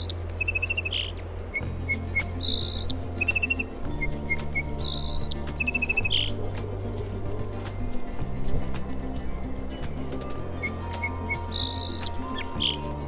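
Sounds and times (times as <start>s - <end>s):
soft background music: 0.0s - 13.0s
sparrow chirping: 1.6s - 13.0s.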